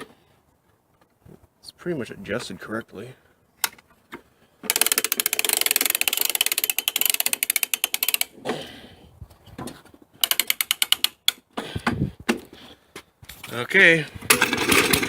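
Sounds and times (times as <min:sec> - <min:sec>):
spring starter ratchet clicking: 0:04.6 - 0:08.3, 0:10.2 - 0:11.2, 0:14.3 - 0:15.0.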